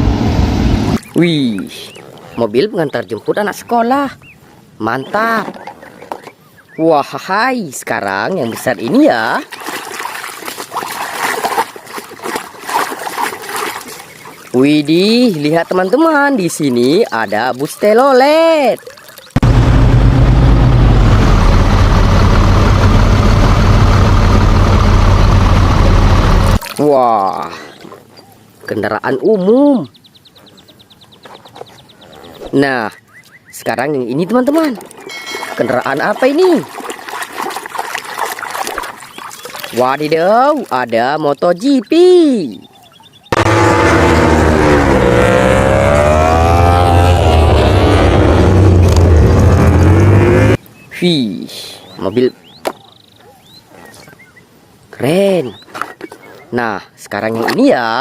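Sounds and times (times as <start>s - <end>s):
racing motorcycle engine revving: 19.4s - 26.6s, 43.3s - 50.6s.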